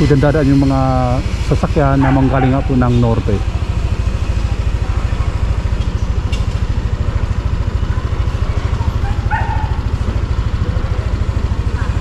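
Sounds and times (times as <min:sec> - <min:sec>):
motorcycle engine running: 0:00.0 - 0:12.0
dog barking: 0:01.9 - 0:03.6, 0:08.8 - 0:10.0, 0:11.6 - 0:12.0.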